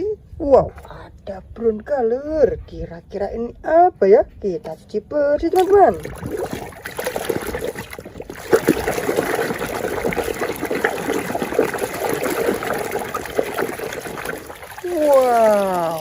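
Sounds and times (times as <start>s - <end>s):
water running and splashing: 5.6s - 16.0s.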